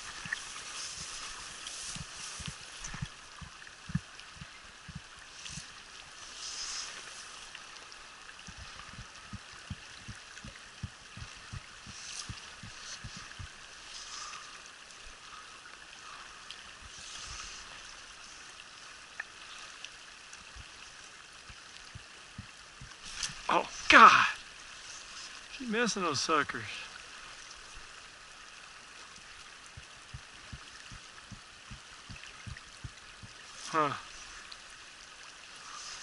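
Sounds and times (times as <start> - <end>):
dull low bumps: 0.0 - 5.8, 8.4 - 13.7, 29.7 - 33.5
stream water rushing: 0.0 - 36.0.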